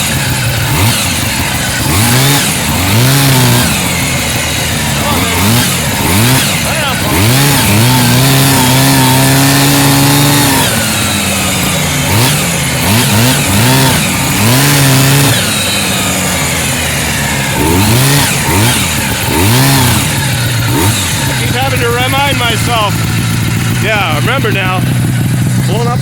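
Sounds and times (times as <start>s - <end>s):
snowmobile engine revving: 0.0s - 26.0s.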